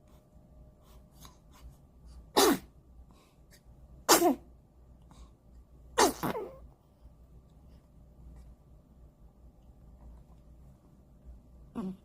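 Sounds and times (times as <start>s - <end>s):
baby sneezing: 2.3s - 2.7s, 4.1s - 4.5s, 6.0s - 6.6s.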